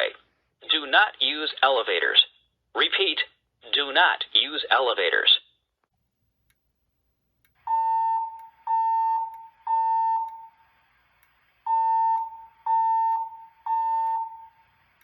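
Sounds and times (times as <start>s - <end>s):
voice messages over speaker: 0.0s - 5.5s
fire alarm beeps: 7.6s - 10.7s, 11.6s - 15.0s.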